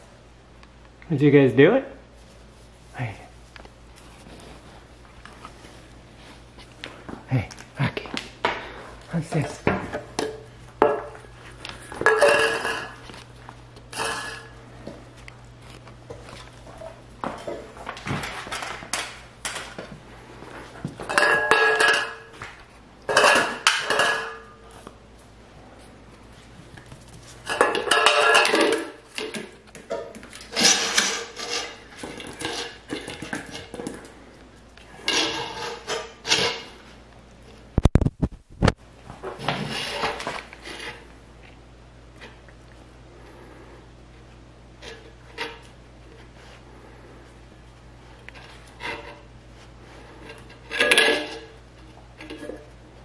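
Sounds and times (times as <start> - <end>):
dog bowls clattering: 9.4 - 13.2, 20.8 - 24.7, 27.2 - 34.1, 50.5 - 51.6.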